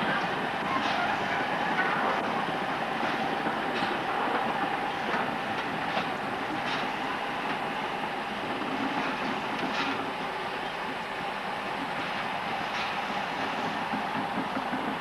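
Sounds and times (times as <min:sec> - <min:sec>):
train rolling rumble: 0:00.0 - 0:15.0
wheels clicking over rail joints: 0:03.0 - 0:06.9, 0:08.4 - 0:10.1.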